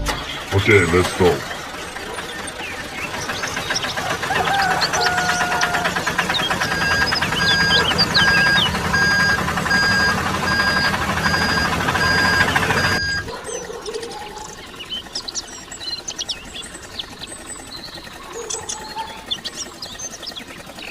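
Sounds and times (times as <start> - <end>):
birds chirping: 0.0 - 20.9
tractor engine running: 0.0 - 20.9
electronic reversing beep: 6.3 - 13.3.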